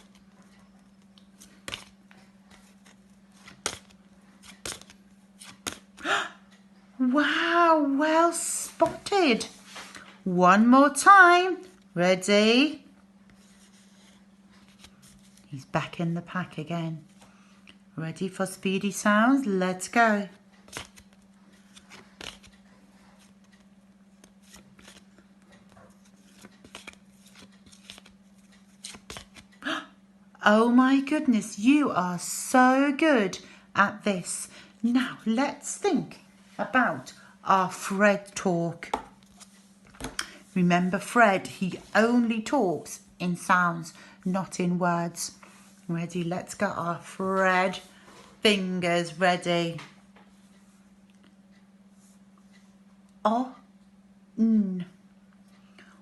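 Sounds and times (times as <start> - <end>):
steady low hum: 0.0 - 56.0
flashcards snapping: 1.0 - 6.0, 20.6 - 22.6, 24.2 - 25.2, 26.1 - 29.5
paper cards flicking: 1.2 - 2.0, 2.6 - 6.0, 20.7 - 22.5, 24.2 - 25.1, 26.2 - 29.5.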